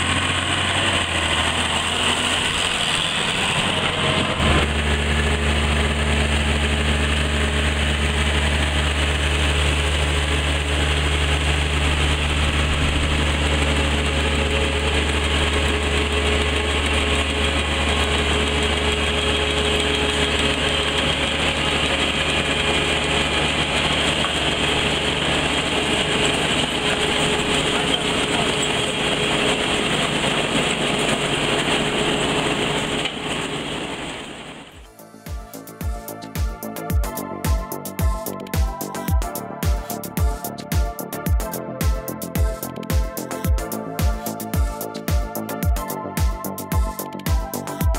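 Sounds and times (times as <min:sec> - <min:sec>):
tractor engine under load: 0:00.0 - 0:34.9
machinery noise: 0:00.0 - 0:41.2.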